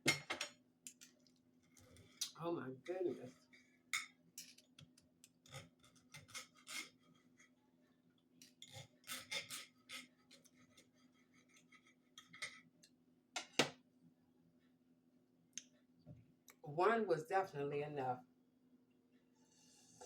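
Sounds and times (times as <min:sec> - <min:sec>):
utensils tapping and scraping dishes: 0:00.0 - 0:01.2, 0:03.5 - 0:07.5, 0:08.4 - 0:12.7.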